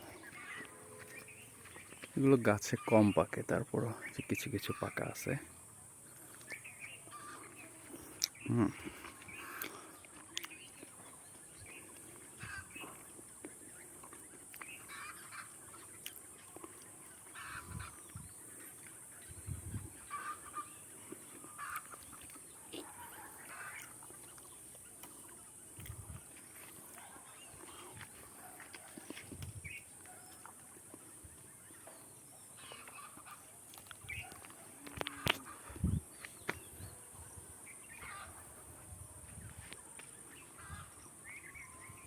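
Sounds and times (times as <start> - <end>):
fowl calling: 0.0 - 1.6, 4.1 - 5.4, 6.4 - 10.0, 11.7 - 13.1, 14.6 - 16.0, 17.1 - 18.8, 20.0 - 24.6, 32.6 - 33.5, 34.1 - 35.8, 37.8 - 38.6, 40.4 - 41.8
faint bird calls: 0.0 - 38.8.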